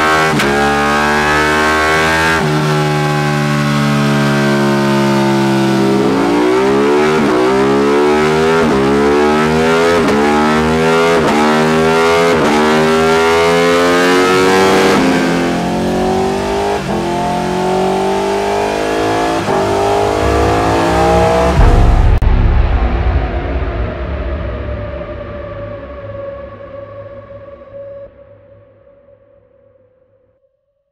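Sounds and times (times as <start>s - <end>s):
motorcycle engine revving: 0.0s - 22.2s.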